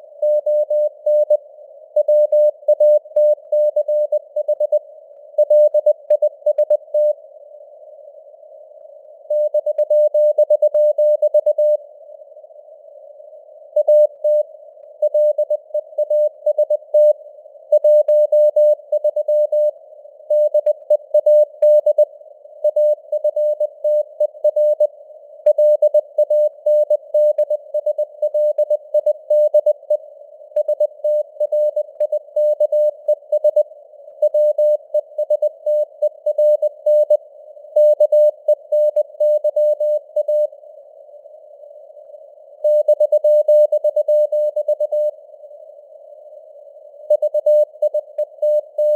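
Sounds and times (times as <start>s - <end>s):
morse code beeps: 47.1s - 48.9s.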